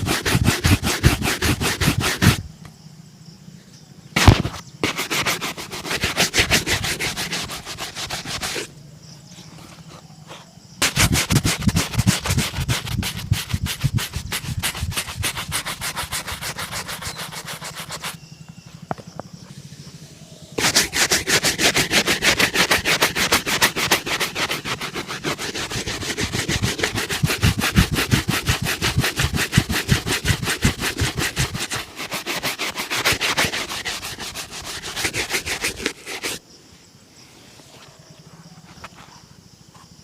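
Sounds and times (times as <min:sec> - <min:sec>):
shoe being brushed: 0:00.0 - 0:02.5, 0:04.2 - 0:08.7, 0:09.6 - 0:18.2, 0:20.6 - 0:36.4
sharp knock: 0:04.2 - 0:04.6.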